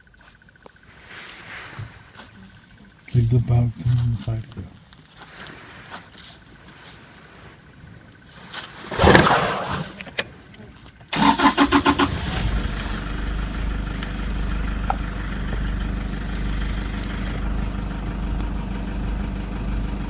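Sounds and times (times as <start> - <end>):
car engine idling: 0.0 - 8.4, 9.2 - 20.0
starter cranking: 11.1 - 12.6.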